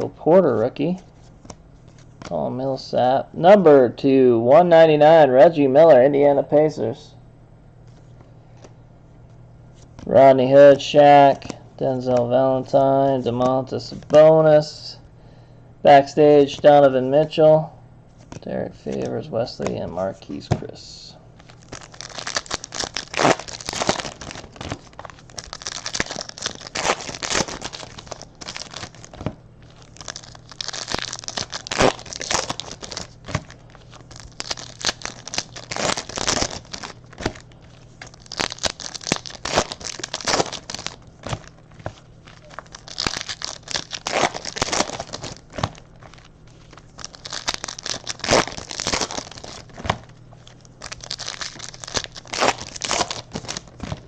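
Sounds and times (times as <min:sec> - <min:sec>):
wrappers torn and crinkled: 0:21.4 - 0:54.0.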